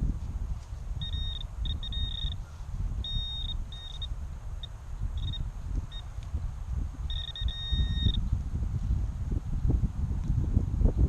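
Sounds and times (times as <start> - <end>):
metal detector beeping: 1.0 - 2.4, 3.0 - 6.1, 7.1 - 8.2.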